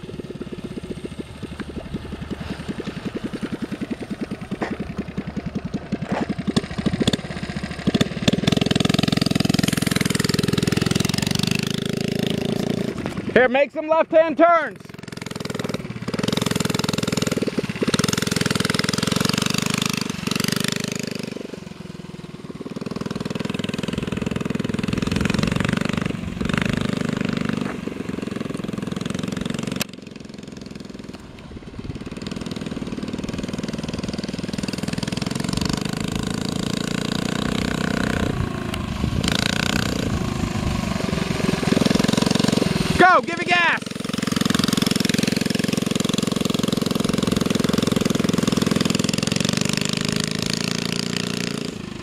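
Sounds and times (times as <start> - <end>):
mini bike engine revving: 0.0 - 52.0.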